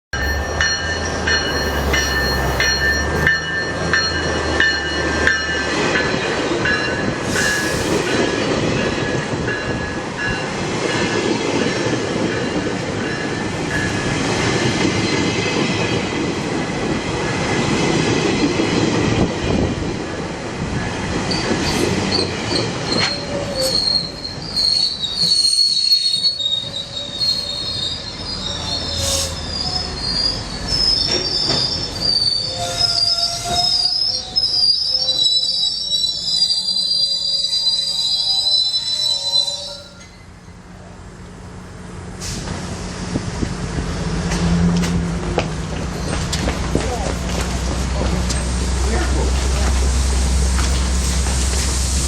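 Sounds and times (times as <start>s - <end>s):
train rumbling on rails: 0.0s - 52.0s
train wheels and brakes squealing: 0.1s - 16.1s, 21.2s - 40.7s, 45.8s - 52.0s.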